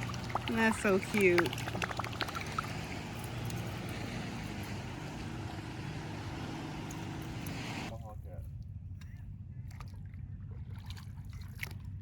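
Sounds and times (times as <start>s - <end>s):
motorboat engine droning: 0.0s - 8.0s.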